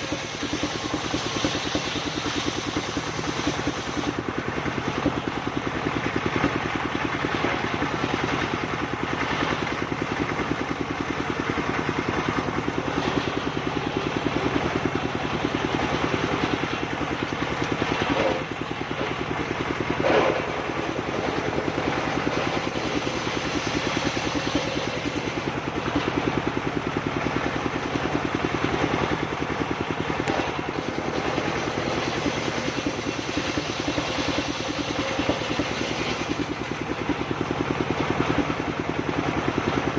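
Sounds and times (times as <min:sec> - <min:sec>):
circular sawmill running: 0:00.0 - 0:39.9.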